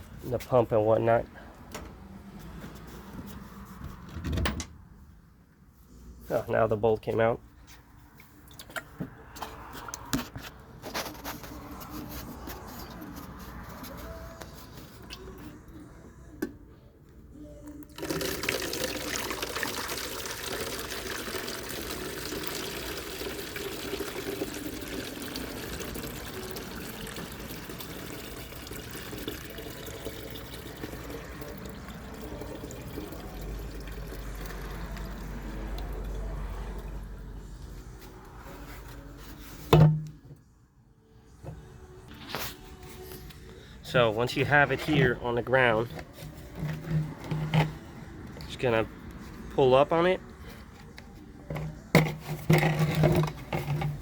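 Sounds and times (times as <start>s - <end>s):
fluid pouring into a bottle: 17.8s - 36.3s.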